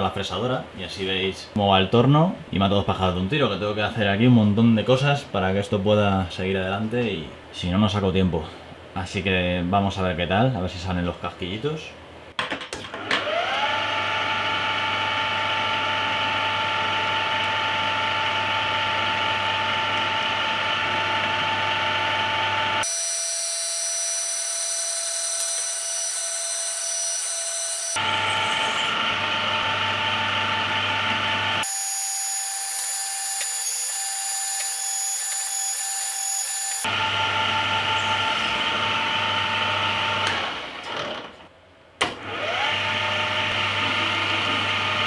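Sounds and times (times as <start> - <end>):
lathe motor whining: 13.2 - 41.2.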